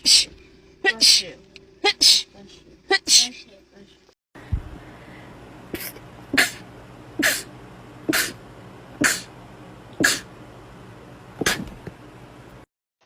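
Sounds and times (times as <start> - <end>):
person sneezing: 5.8 - 6.6, 7.2 - 7.5, 8.1 - 8.4, 9.0 - 9.3, 10.0 - 10.3, 11.4 - 11.8.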